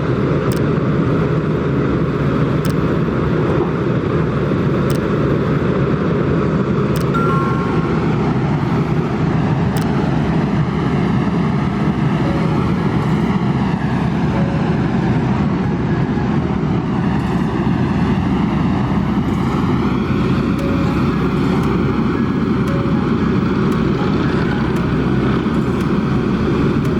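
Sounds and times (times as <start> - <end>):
excavator engine droning: 11.7 - 26.9.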